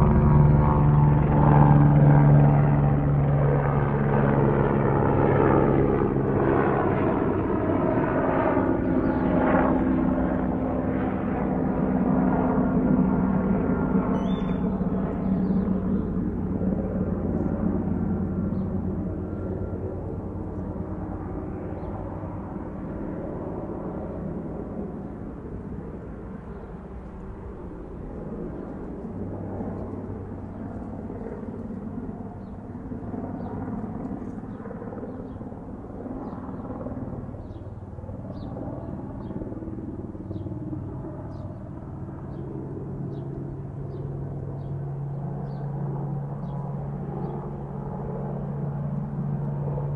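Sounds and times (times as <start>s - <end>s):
low engine hum: 0.0s - 8.6s
helicopter rotor chop: 0.0s - 49.9s.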